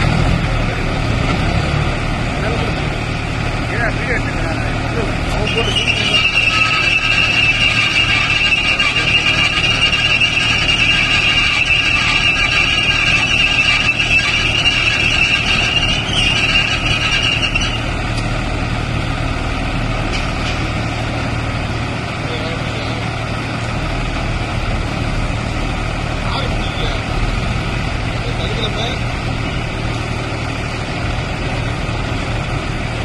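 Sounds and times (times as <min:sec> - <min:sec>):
high-pitched machine whine: 0:05.4 - 0:17.9
machine hum: 0:05.6 - 0:17.9.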